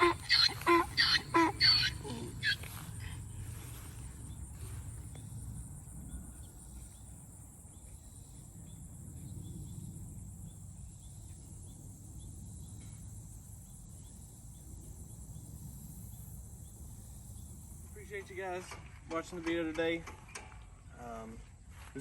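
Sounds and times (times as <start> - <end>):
crickets and insects chirping: 0.0 - 22.0.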